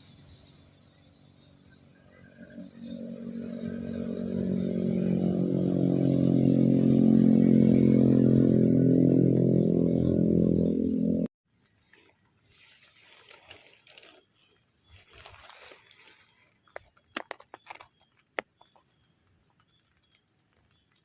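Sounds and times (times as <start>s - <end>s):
engine running: 0.0s - 11.3s.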